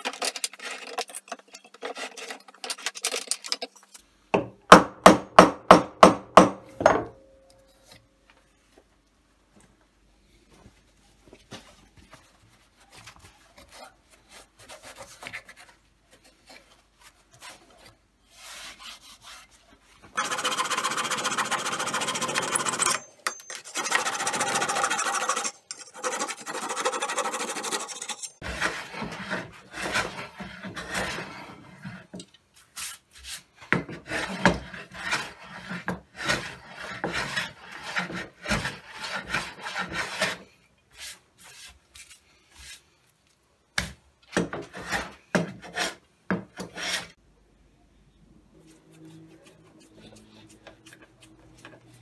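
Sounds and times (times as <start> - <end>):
wood being scraped by hand: 23.7 - 32.2, 32.8 - 40.4, 44.5 - 47.2.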